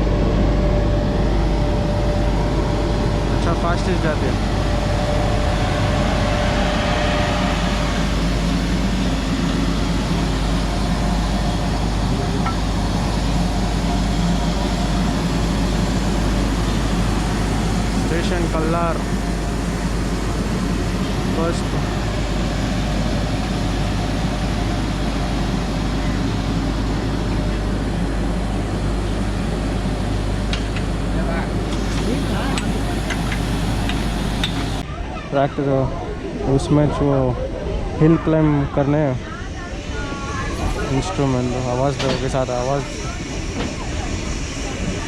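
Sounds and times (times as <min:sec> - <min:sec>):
low hum: 0:00.0 - 0:34.9
train rumbling: 0:00.0 - 0:35.2, 0:35.9 - 0:45.0.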